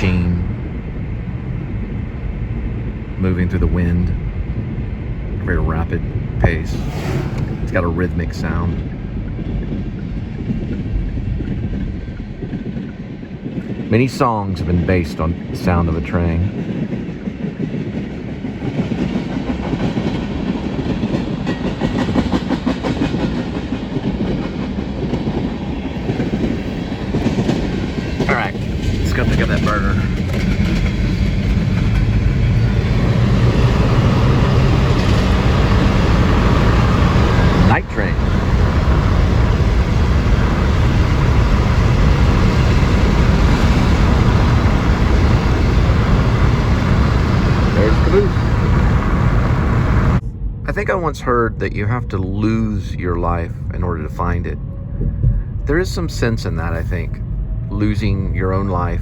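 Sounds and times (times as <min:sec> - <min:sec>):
train rumbling past: 0:00.0 - 0:59.0
wheels clacking over rails: 0:16.5 - 0:50.2.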